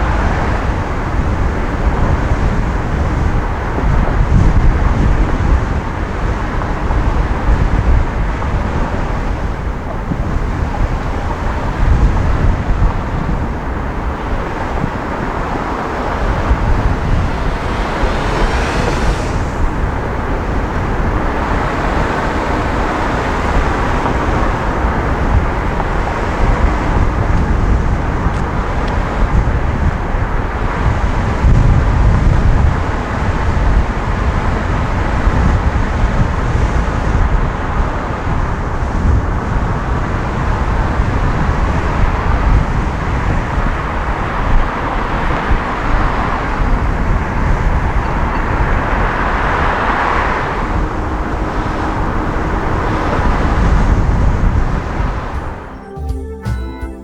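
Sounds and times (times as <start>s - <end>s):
road and traffic rumble: 0.0s - 55.8s
wind noise on microphone: 0.0s - 55.8s
rising whoosh: 14.8s - 23.6s, 48.9s - 55.9s.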